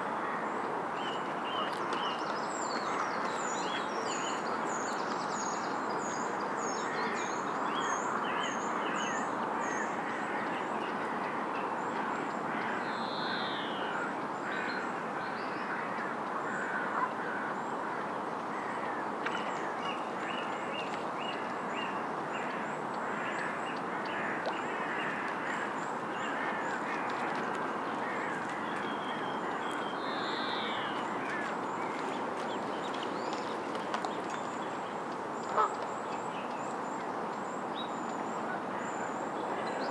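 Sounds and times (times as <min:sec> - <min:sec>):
waterfowl calls: 0:35.5 - 0:35.8.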